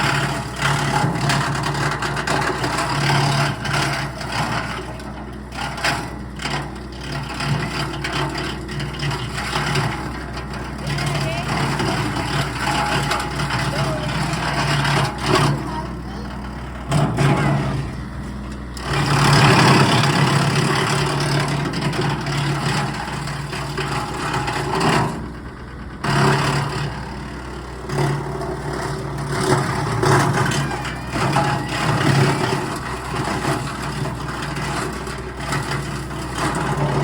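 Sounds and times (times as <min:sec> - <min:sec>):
diesel tractor engine running: 0:00.0 - 0:37.0
wood chipper chipping branches: 0:00.0 - 0:37.0.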